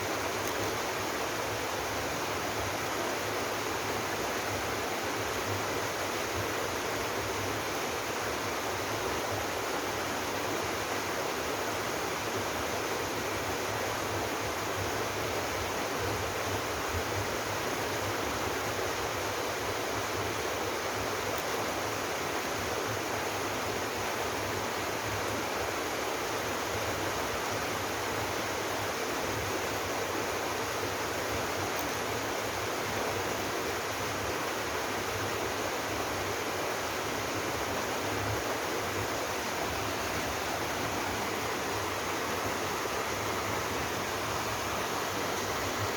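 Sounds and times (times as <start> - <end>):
waterfall rushing: 29.5 - 45.9.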